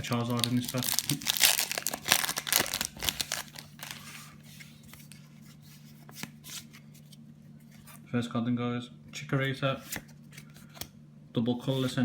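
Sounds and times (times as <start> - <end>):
foil wrapper crinkling and tearing: 0.0 - 4.0.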